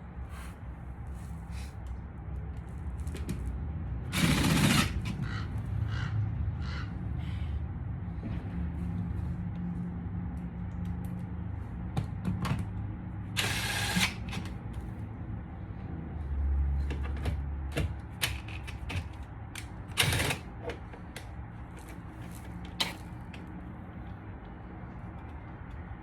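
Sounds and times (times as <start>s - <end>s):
loud rasping bursts: 4.1s - 6.1s, 13.4s - 14.5s, 19.9s - 20.6s.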